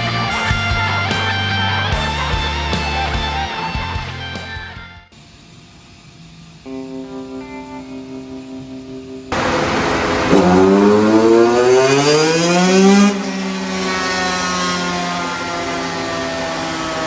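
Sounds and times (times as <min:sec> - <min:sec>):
background music: 0:00.0 - 0:05.1
motorcycle engine revving: 0:09.3 - 0:17.0.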